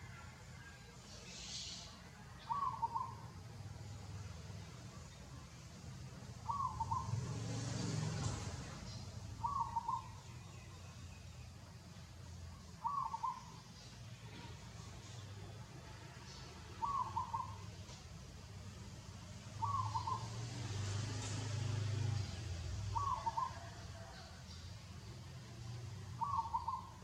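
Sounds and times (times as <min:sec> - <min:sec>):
bird hooting call: 0:02.4 - 0:03.2, 0:06.4 - 0:07.2, 0:09.4 - 0:10.2, 0:12.8 - 0:13.6, 0:16.8 - 0:17.7, 0:19.6 - 0:20.4, 0:22.9 - 0:24.2, 0:26.2 - 0:27.0.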